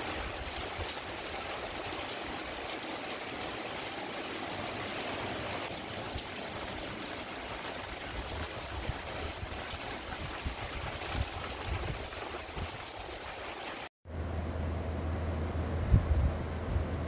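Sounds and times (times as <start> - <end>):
water rushing: 0.0 - 13.9
low steady rumble: 14.1 - 17.0.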